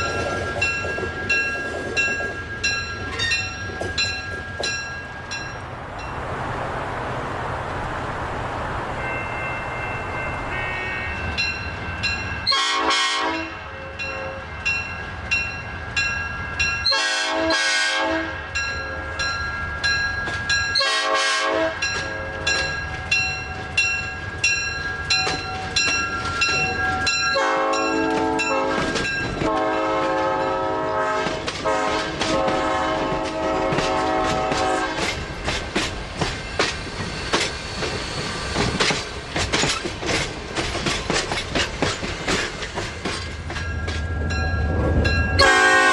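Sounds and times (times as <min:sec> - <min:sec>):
wheels clacking over rail joints: 0:00.0 - 0:05.7, 0:21.8 - 0:45.5
train air horn blasts: 0:12.5 - 0:14.4, 0:16.9 - 0:18.5, 0:20.8 - 0:22.6, 0:27.3 - 0:35.2, 0:45.4 - 0:45.9.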